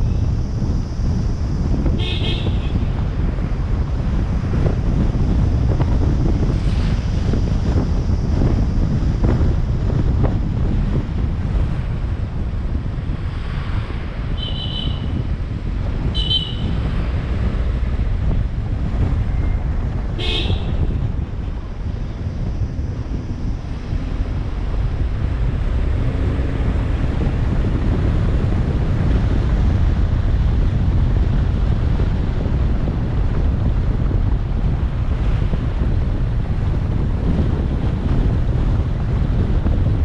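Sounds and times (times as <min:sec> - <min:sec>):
vehicle rumble: 0:00.0 - 0:40.0
wind buffeting microphone: 0:00.0 - 0:40.0
horn honk: 0:01.9 - 0:02.9, 0:14.4 - 0:15.2, 0:16.1 - 0:16.8, 0:20.2 - 0:20.9.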